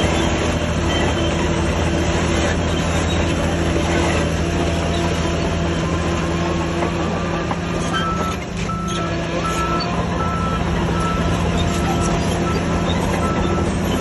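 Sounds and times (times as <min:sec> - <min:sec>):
heavy diesel machinery running: 0:00.0 - 0:14.0
reversing alarm beeping: 0:07.2 - 0:14.0.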